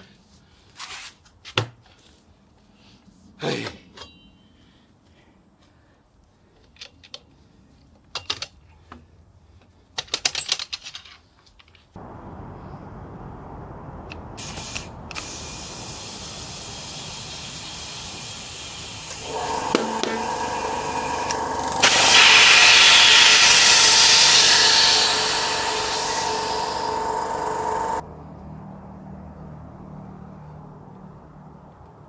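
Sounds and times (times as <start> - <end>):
rushing air hiss: 14.4 - 28.0.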